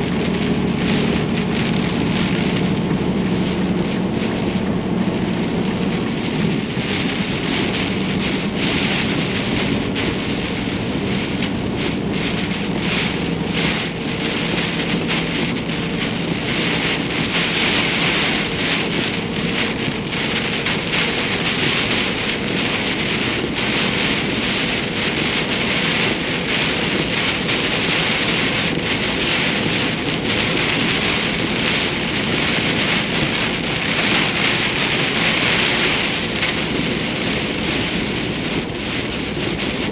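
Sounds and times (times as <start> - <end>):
low engine hum: 0.0 - 39.9
rain beating on a vehicle: 0.0 - 39.9.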